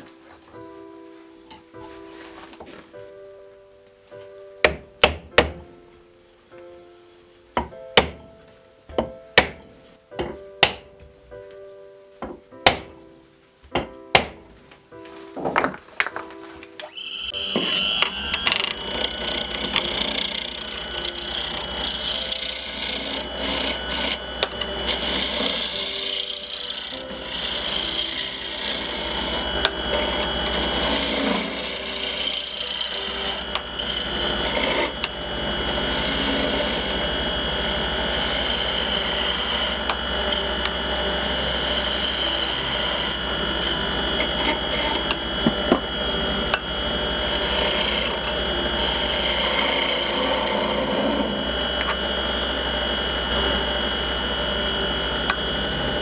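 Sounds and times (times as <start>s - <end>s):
lathe tool rasping on wood: 16.8s - 56.0s
low motor hum: 17.4s - 56.0s.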